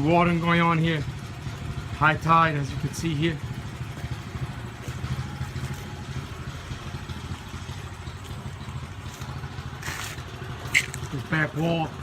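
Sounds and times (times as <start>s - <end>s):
pump engine running: 0.0s - 12.0s.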